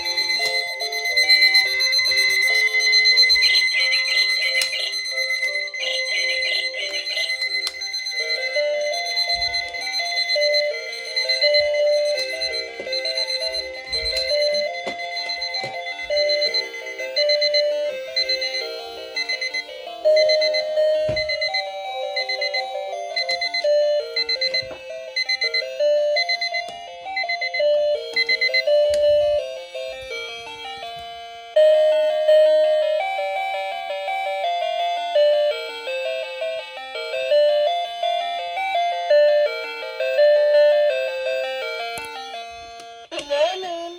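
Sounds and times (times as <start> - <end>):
fast high beeping: 0.0 - 29.4
alarm clock beeping melody: 0.0 - 43.6.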